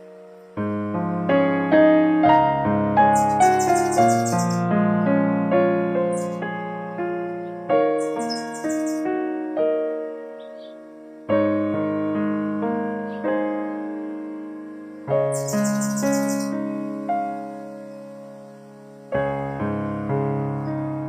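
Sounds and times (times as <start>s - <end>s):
slow solo piano music: 0.0s - 21.0s
rapid high-pitched chirping: 3.0s - 4.7s, 6.1s - 6.4s, 8.0s - 9.1s, 15.3s - 18.1s.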